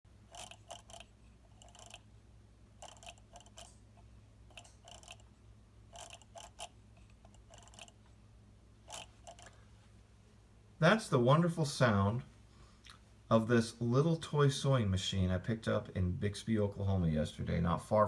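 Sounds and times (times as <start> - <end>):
sewing machine mechanism clicking: 0.3 - 2.0, 2.8 - 3.8, 4.5 - 5.3, 5.9 - 8.0.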